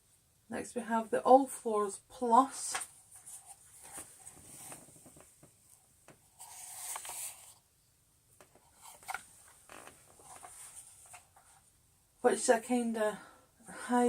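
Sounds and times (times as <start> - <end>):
scraping rub: 6.3 - 7.6.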